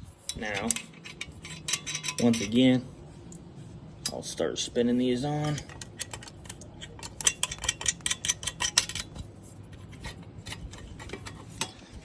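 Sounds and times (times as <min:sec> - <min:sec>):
metallic clinking of bolts: 0:00.6 - 0:02.6, 0:05.4 - 0:09.2.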